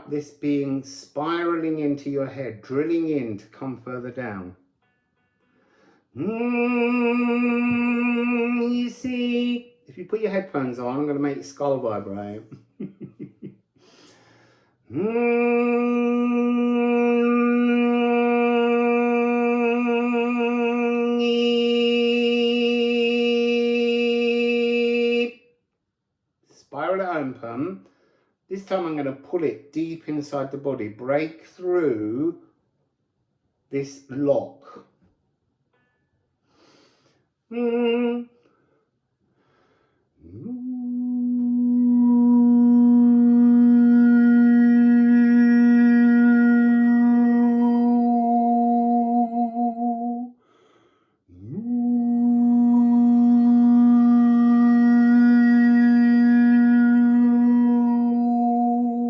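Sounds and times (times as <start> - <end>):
man toning a long note: 3.8 - 9.7, 14.9 - 25.3, 37.5 - 38.4, 40.3 - 50.3, 51.4 - 59.0
breath: 5.5 - 6.1, 13.8 - 14.8, 27.8 - 28.4, 36.4 - 37.3, 38.4 - 40.1, 50.4 - 51.3.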